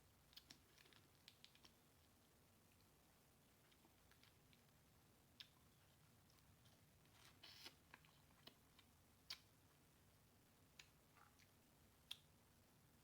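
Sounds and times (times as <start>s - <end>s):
eating clicks and snaps: 0.3s - 1.8s, 7.5s - 9.5s, 10.7s - 12.3s.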